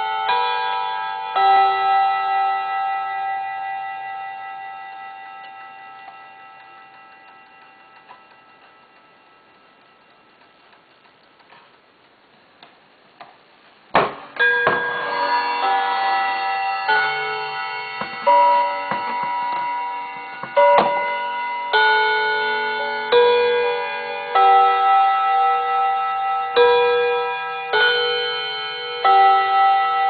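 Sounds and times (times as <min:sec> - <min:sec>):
clock chime melody: 0:00.0 - 0:10.8, 0:14.4 - 0:30.0
clock ticking faintly: 0:04.9 - 0:13.7.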